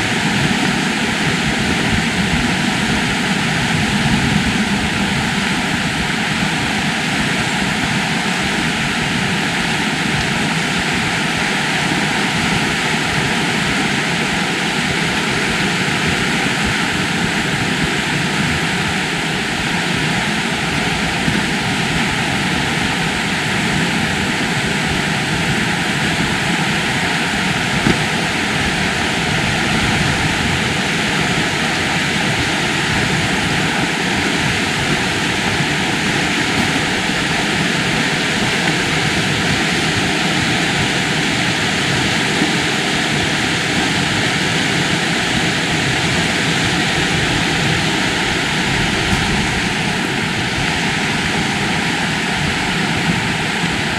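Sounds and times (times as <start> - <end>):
fast-flowing river water rushing: 0.0 - 53.9.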